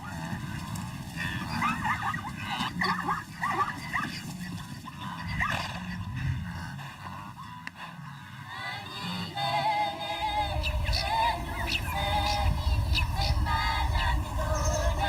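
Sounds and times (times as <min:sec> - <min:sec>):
animal high yelping calls: 0:01.3 - 0:06.0
low steady hum: 0:08.9 - 0:15.0.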